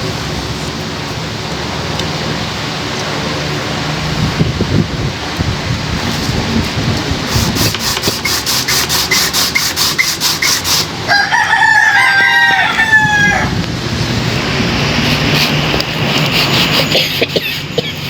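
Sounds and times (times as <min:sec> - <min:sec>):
rooster crowing: 0:11.0 - 0:13.6.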